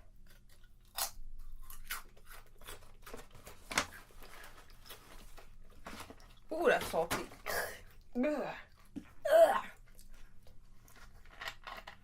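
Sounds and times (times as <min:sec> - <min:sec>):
potato chips crunching: 0:00.1 - 0:06.5.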